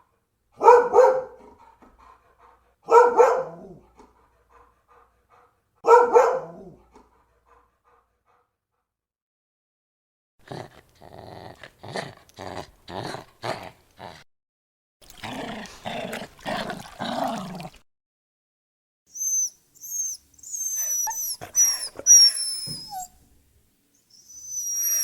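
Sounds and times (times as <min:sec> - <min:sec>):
dog barking roughly: 0:00.6 - 0:01.8, 0:02.8 - 0:03.9, 0:05.8 - 0:06.8
dog growling: 0:10.4 - 0:14.3
dog whining: 0:19.1 - 0:23.2, 0:24.1 - 0:25.0.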